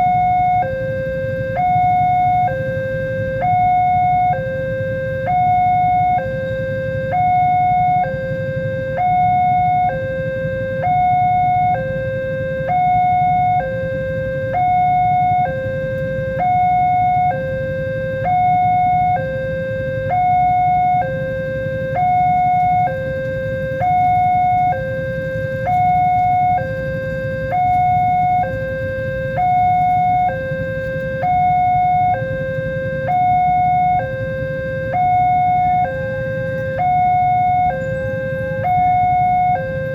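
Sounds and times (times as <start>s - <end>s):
two-tone crossing alarm: 0.0s - 39.9s.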